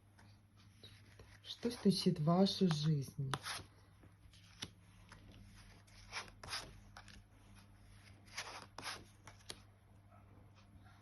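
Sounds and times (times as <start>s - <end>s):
cards swishing and tapping: 0.6s - 3.7s, 8.0s - 9.7s.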